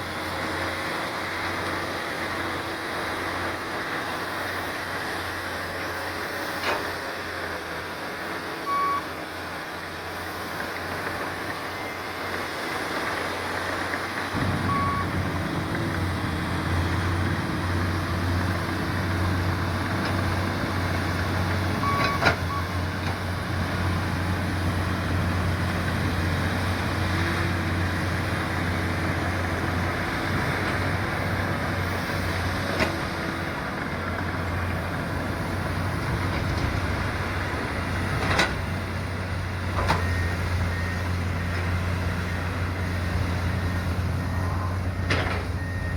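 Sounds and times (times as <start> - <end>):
excavator diesel engine running: 0.0 - 45.9
short beeps: 8.7 - 9.1, 14.4 - 15.4, 21.7 - 22.8.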